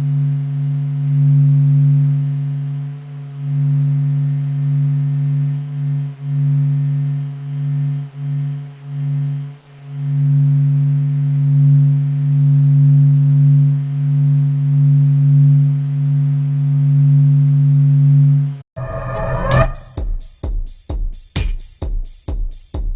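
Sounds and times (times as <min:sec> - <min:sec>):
low humming drone: 0:18.8 - 0:19.9.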